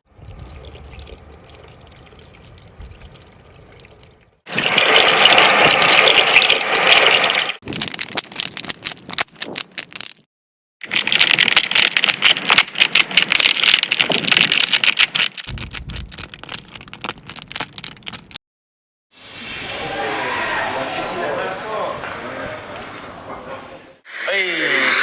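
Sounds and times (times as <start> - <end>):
fast dense clicking and rattling: 4.6 - 10.2, 10.8 - 18.4.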